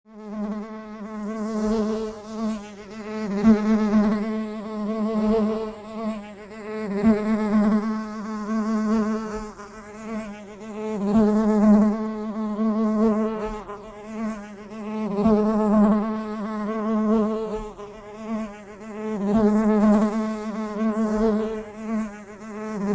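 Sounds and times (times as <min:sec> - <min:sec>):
bee buzzing in flight: 0:00.1 - 0:22.9.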